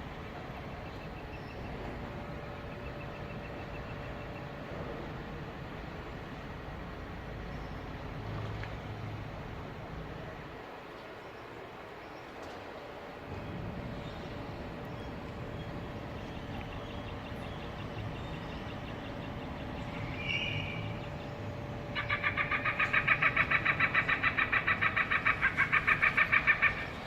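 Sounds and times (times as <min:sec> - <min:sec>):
steady low rumble: 0:12.9 - 0:27.0
bird distress calls through speakers: 0:19.8 - 0:21.3.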